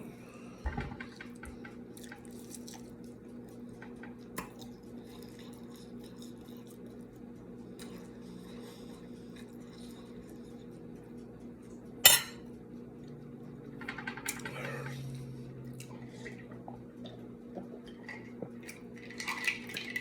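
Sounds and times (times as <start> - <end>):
cutlery clinking on plate: 12.1 - 12.4.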